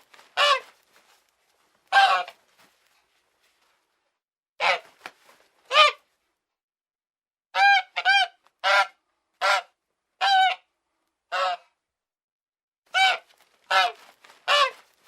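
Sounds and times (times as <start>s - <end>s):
goose honking: 0.3s - 0.7s, 1.9s - 2.4s, 13.0s - 14.9s.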